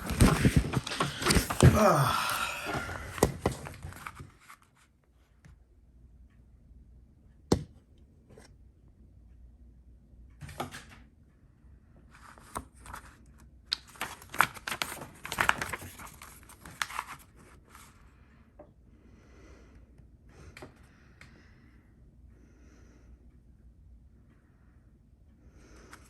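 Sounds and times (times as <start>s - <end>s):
paper rustling and crinkling: 0.0s - 4.8s, 12.2s - 18.0s.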